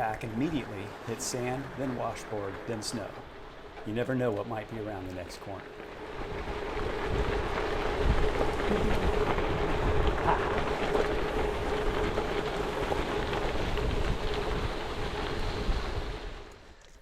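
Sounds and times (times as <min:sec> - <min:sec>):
bike rattling on gravel track: 0:00.0 - 0:16.8
wind buffeting microphone: 0:05.8 - 0:16.5.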